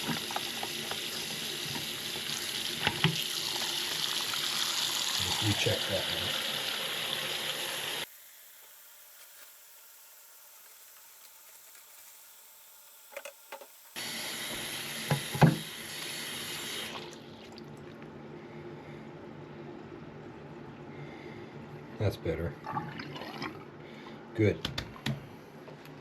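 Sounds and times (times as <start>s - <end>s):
tap water running into drain: 0.0s - 8.1s, 14.0s - 17.8s, 22.6s - 23.6s.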